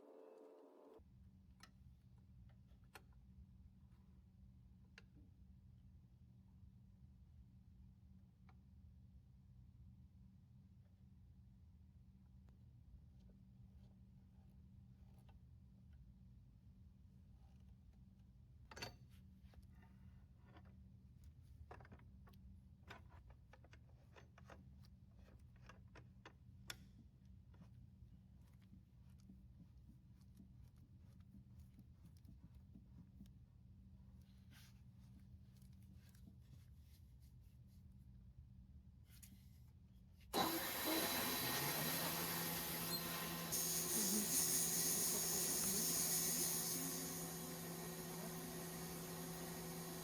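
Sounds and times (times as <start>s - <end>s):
machine hum and whirring hiss: 40.4s - 50.0s.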